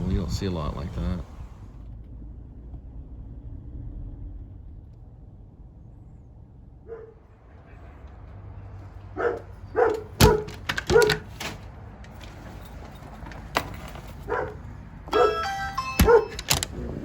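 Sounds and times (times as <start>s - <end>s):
low steady rumble: 0.0s - 7.8s
dog barking: 6.8s - 7.4s, 9.1s - 11.3s, 14.3s - 16.4s.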